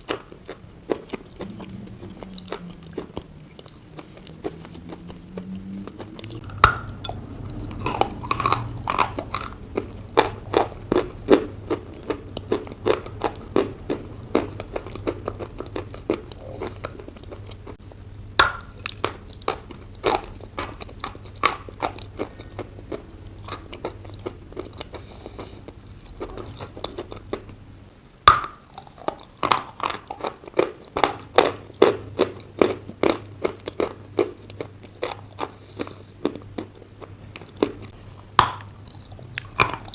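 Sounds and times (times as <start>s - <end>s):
chewing and crunching chalk: 0.0s - 27.6s, 28.6s - 39.9s
loud bite: 0.1s - 13.7s.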